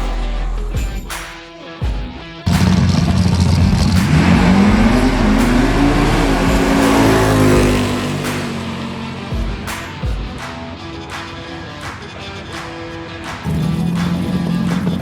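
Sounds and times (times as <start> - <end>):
drag car accelerating: 2.5 - 9.3.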